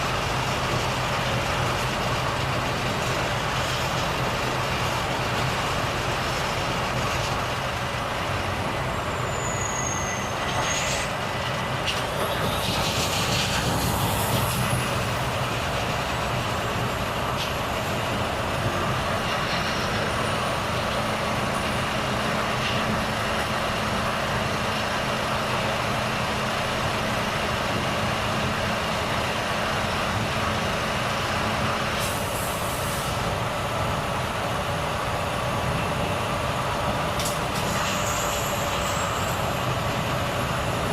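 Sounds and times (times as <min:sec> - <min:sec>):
diesel truck engine running: 0:00.0 - 0:10.4, 0:11.0 - 0:40.9
short high air hisses: 0:32.0 - 0:33.3, 0:37.6 - 0:39.4.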